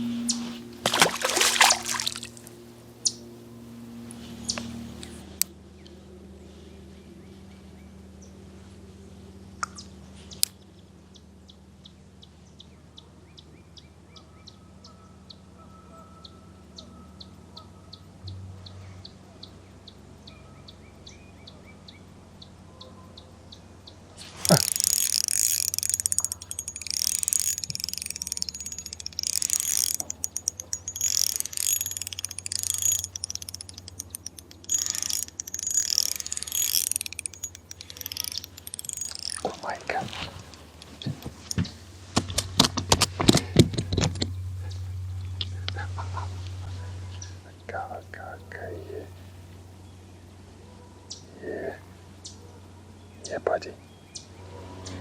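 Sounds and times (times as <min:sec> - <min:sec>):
fishing reel drag clicking: 0:24.4 - 0:39.8
light regular ticking: 0:24.4 - 0:41.7.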